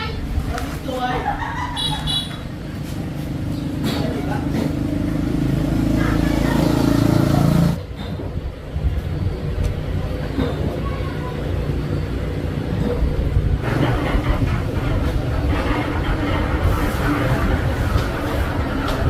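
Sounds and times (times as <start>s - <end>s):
knocks and rattles: 12.8s - 19.0s.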